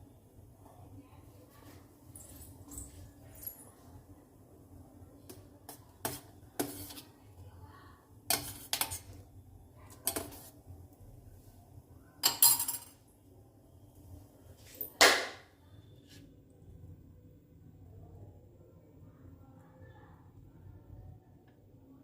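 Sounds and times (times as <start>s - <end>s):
kitchen utensils clattering: 12.2s - 13.0s.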